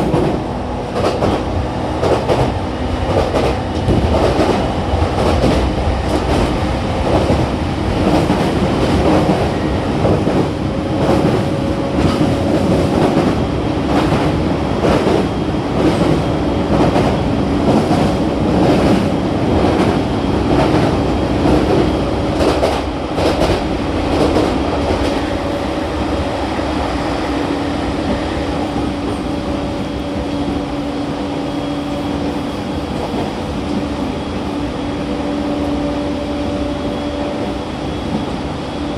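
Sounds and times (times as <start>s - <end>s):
train wheels clicking over rail joints: 0.0s - 25.4s.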